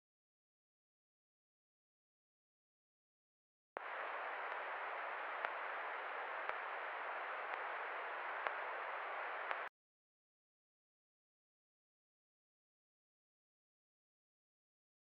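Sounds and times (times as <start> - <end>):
faint clicks: 3.8 - 9.7
steady static hiss: 3.8 - 9.7.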